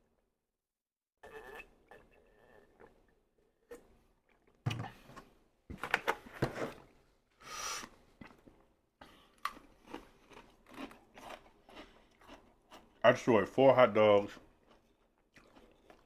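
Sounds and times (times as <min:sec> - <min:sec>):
chewing and mouth noises: 0:07.8 - 0:13.3, 0:14.2 - 0:16.0.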